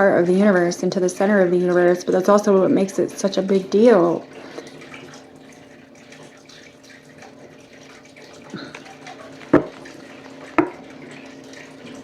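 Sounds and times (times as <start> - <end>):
low room hum: 0.0 - 12.0
sharp taps: 10.6 - 10.8.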